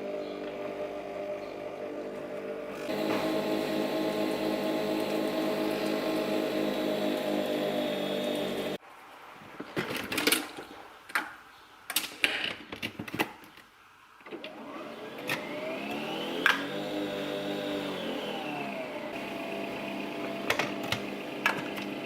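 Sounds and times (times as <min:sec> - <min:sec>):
coffee machine motor whirring: 0:00.0 - 0:08.8, 0:15.0 - 0:22.0.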